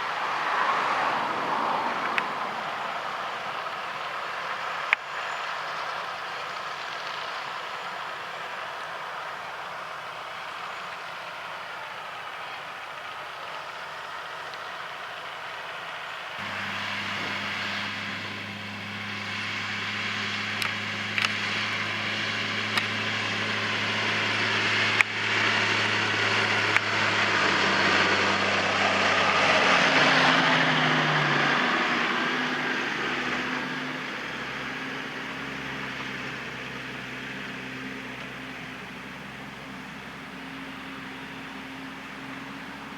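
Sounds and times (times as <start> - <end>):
tractor engine running: 0.0 - 42.9
harvester clattering: 16.4 - 30.0.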